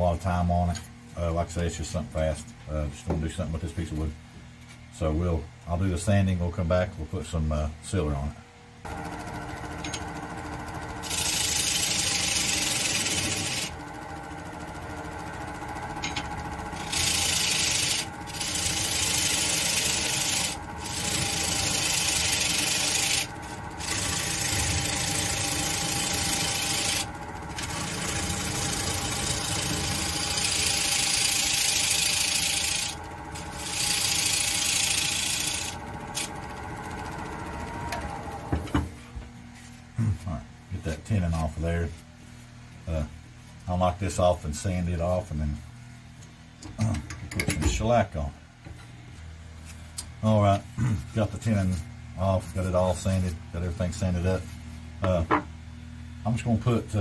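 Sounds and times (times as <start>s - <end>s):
lathe humming: 8.9s - 39.0s.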